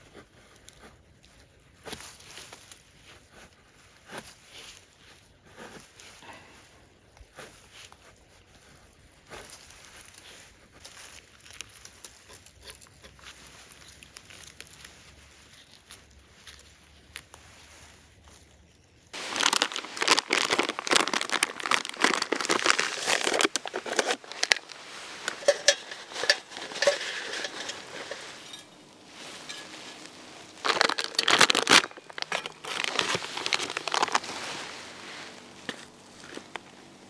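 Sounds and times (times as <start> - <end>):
crinkling handling noise: 19.2 - 37.0.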